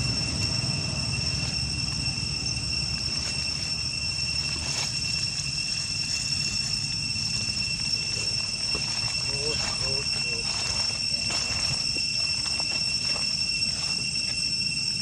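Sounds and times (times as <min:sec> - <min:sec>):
high-pitched insect drone: 0:00.0 - 0:15.0
low rumble: 0:00.0 - 0:15.0.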